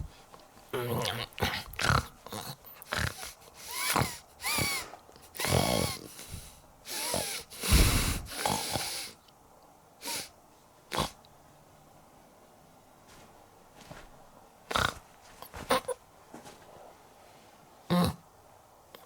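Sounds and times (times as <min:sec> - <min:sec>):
exaggerated comic snoring: 0:00.8 - 0:09.1, 0:14.7 - 0:15.0.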